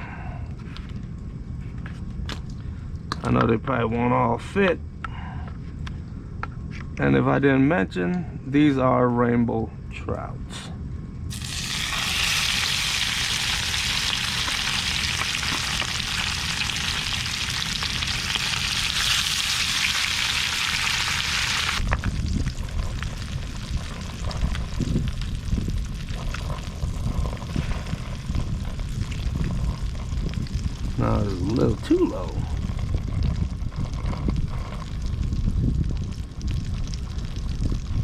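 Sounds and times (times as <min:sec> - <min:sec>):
low rumbling: 0:10.6 - 0:38.0
fish sizzling in a pan: 0:11.3 - 0:30.8.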